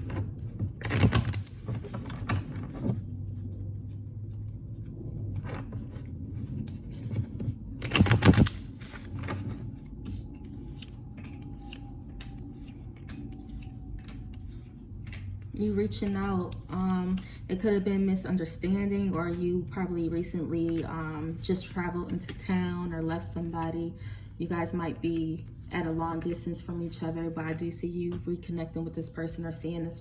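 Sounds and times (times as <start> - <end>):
cards shuffling: 0.0 - 22.4
light clicks of cards: 10.3 - 17.4.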